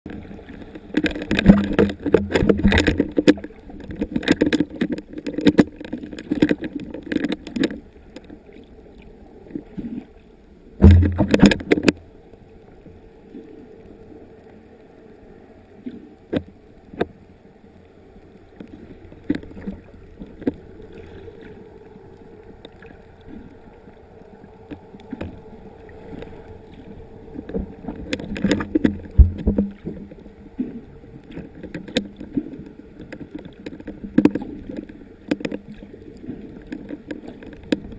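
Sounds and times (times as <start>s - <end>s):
water sloshing and gurgling: 0.0s - 37.9s
heavy thump: 10.8s - 11.6s, 29.1s - 29.7s.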